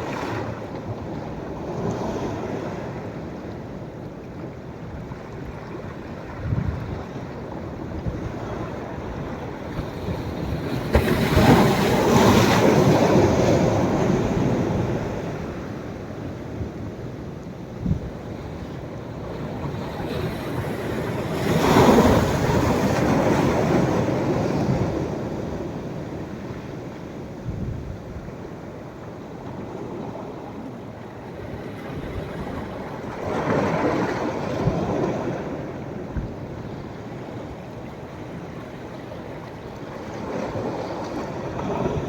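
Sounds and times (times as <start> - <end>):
surf washing: 0.0 - 42.0
waves crashing on beach: 8.3 - 16.4.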